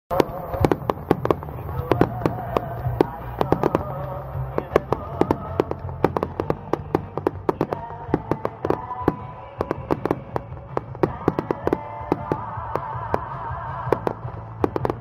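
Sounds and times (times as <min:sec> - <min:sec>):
fireworks crackling and popping: 0:00.1 - 0:15.0
low rumble: 0:00.1 - 0:15.0.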